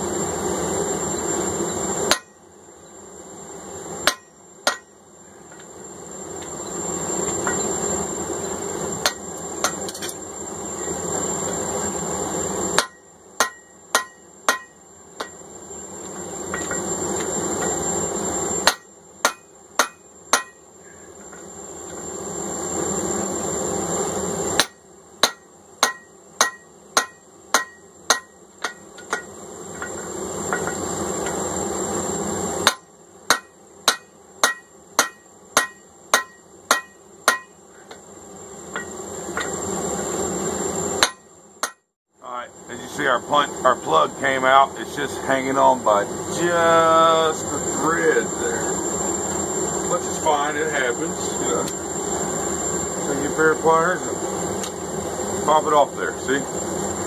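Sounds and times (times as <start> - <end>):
hammer striking punch into steel: 2.1 - 2.4, 4.0 - 4.9, 12.8 - 15.4, 18.6 - 20.6, 24.6 - 29.3, 32.6 - 37.6, 41.0 - 41.8.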